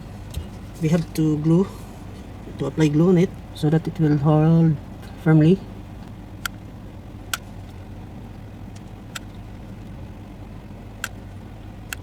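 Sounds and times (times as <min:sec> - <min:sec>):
low mechanical hum: 0:00.0 - 0:12.0
sharp clicks: 0:06.0 - 0:06.6, 0:08.7 - 0:09.4, 0:11.0 - 0:11.2.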